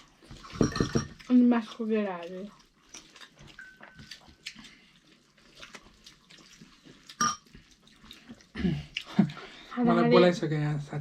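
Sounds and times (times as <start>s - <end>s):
tableware clink: 0.4s - 1.2s, 7.2s - 7.5s
wet mouth eating noises: 1.2s - 9.4s.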